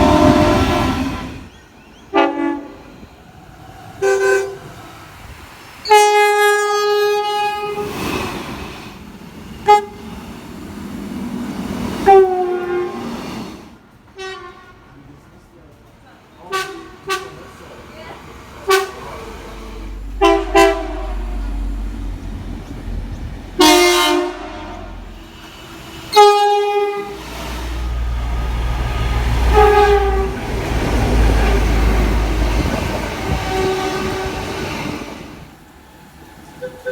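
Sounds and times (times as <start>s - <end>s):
train horn short blasts: 0.0s - 1.5s, 2.1s - 2.8s, 4.0s - 4.7s, 5.9s - 7.9s, 12.0s - 13.1s, 14.1s - 15.0s, 16.5s - 17.6s, 19.9s - 21.6s, 23.6s - 25.1s, 26.1s - 27.2s, 29.4s - 30.6s, 33.2s - 34.6s
train rumbling: 0.0s - 36.9s.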